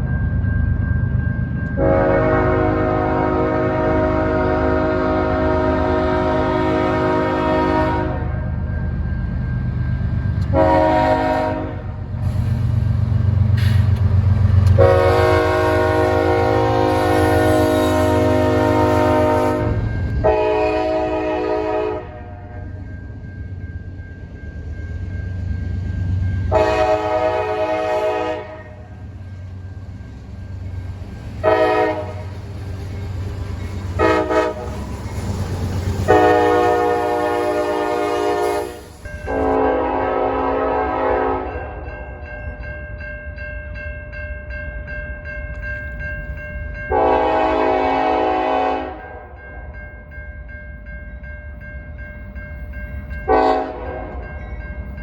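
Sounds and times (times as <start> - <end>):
train rumbling: 0.0 - 55.0
locomotive air horn blasts: 1.8 - 8.3, 10.5 - 12.0, 14.7 - 22.5, 26.5 - 28.8, 31.4 - 32.3, 34.0 - 34.8, 36.1 - 41.6, 46.9 - 49.2, 53.3 - 54.1.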